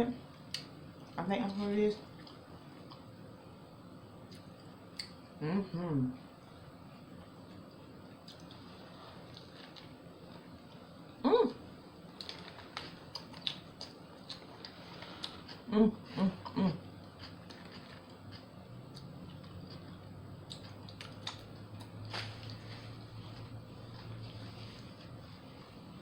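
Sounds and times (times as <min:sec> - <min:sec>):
low steady hum: 0:00.0 - 0:26.0
chewing sandwich: 0:07.6 - 0:10.9, 0:12.0 - 0:15.7, 0:16.4 - 0:25.8.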